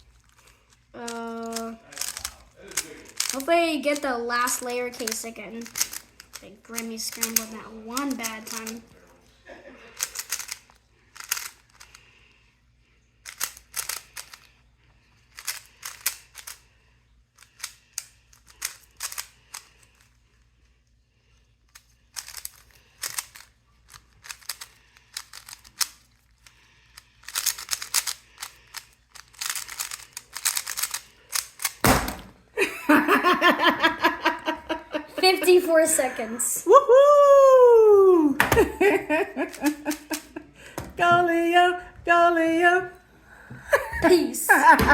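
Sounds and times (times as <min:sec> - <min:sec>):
puzzle cube plastic clicks: 0:00.0 - 0:09.0, 0:10.0 - 0:12.1, 0:13.2 - 0:14.6, 0:15.2 - 0:16.7, 0:17.3 - 0:20.2, 0:21.6 - 0:31.8, 0:39.4 - 0:40.3
person speaking: 0:00.9 - 0:09.0, 0:32.9 - 0:43.0, 0:43.7 - 0:44.9
thump: 0:31.8 - 0:32.4.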